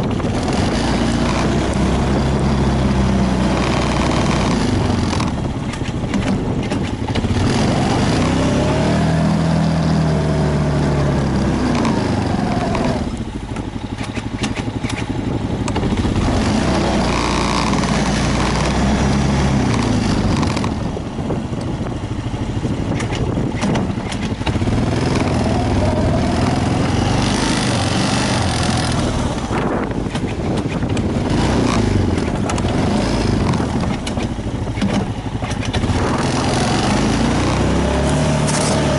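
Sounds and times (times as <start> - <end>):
engine revving up and down: 0.0 - 38.9.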